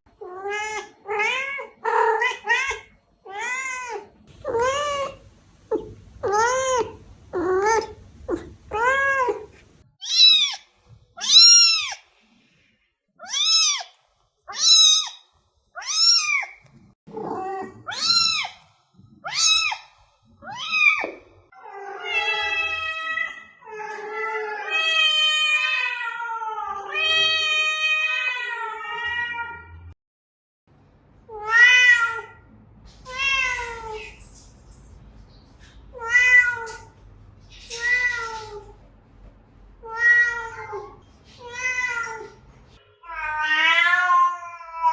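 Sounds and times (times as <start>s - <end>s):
cat meowing: 8.7s - 10.6s, 11.2s - 12.0s, 13.2s - 13.9s, 14.5s - 15.2s, 31.3s - 32.4s, 33.0s - 34.3s, 35.9s - 38.8s, 39.8s - 42.4s, 43.0s - 44.9s.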